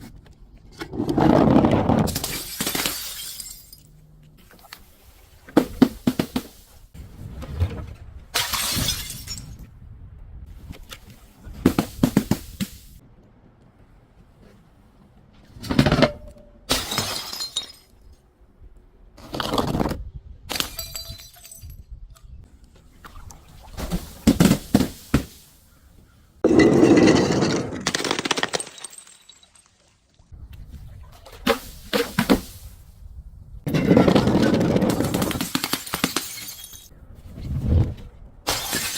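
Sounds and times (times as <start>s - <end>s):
glass shattering: 2.1s - 3.9s, 8.4s - 9.6s, 16.7s - 18.0s, 26.5s - 30.0s, 34.9s - 36.9s, 38.5s - 38.9s
glass crunching: 26.4s - 30.1s, 35.0s - 36.9s.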